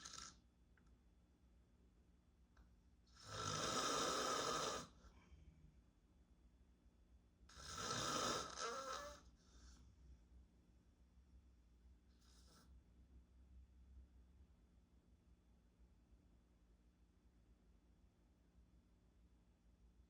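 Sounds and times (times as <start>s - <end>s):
man snoring: 3.2s - 4.9s, 7.5s - 9.2s
faint breath: 8.7s - 10.0s.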